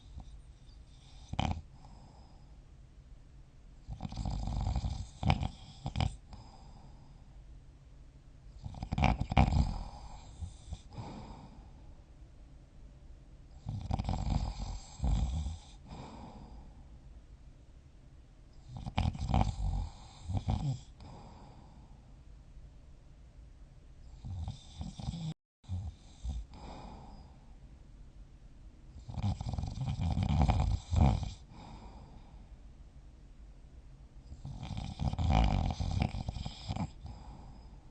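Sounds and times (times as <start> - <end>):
person snoring: 0.9 - 2.4, 3.9 - 7.2, 8.6 - 11.8, 13.6 - 16.8, 18.6 - 21.9, 24.1 - 27.4, 29.0 - 32.4, 34.3 - 37.8.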